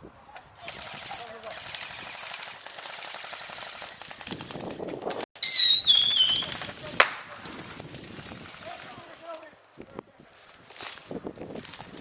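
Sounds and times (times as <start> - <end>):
shrill high-pitched cry: 5.4 - 6.6
airsoft guns firing: 5.4 - 7.4
sharp crack: 5.4 - 7.8.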